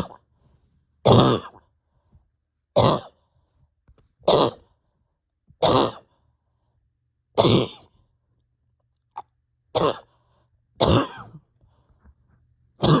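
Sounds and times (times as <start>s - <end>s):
person coughing harshly: 4.3s - 4.6s, 5.6s - 6.0s, 7.4s - 7.8s, 9.8s - 10.1s, 10.8s - 11.5s, 12.8s - 13.0s.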